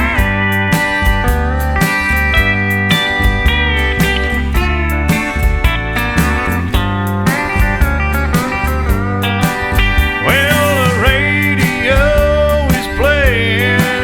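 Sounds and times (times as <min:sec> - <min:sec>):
country music with slide guitar: 0:00.0 - 0:14.0.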